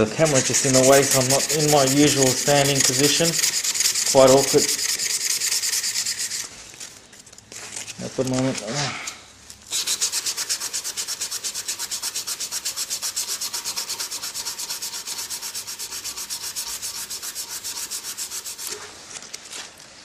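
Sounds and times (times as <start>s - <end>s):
sandpaper rubbing on wood: 0.0s - 6.5s, 9.7s - 18.9s.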